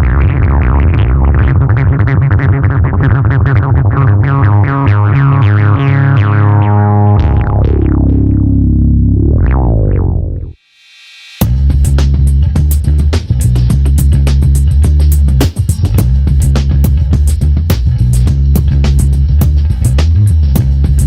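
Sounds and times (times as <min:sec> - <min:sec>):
electronic synthesizer music: 0:04.2 - 0:10.6.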